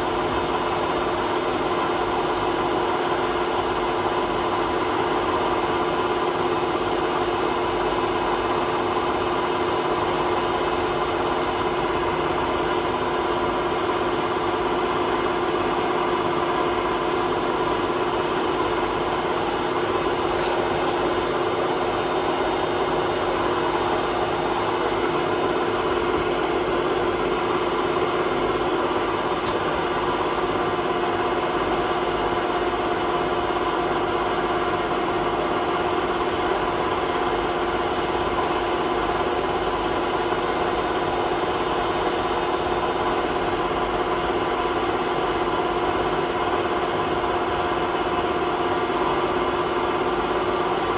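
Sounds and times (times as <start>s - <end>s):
washing machine spinning: 9.0s - 40.4s.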